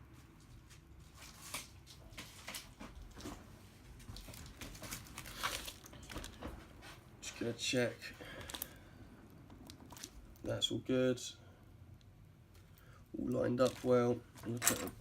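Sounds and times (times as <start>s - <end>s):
plastic packaging rustling: 4.0s - 6.8s, 8.2s - 8.8s, 13.3s - 15.0s.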